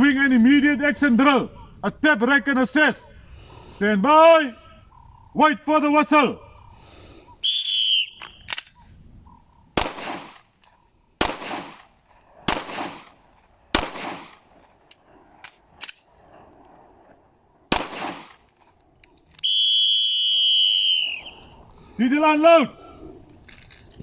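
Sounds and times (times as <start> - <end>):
faint gun clicks: 8.1 - 9.0, 9.8 - 17.1
handgun shots echoing: 9.8 - 10.6, 11.2 - 16.1, 17.7 - 18.6.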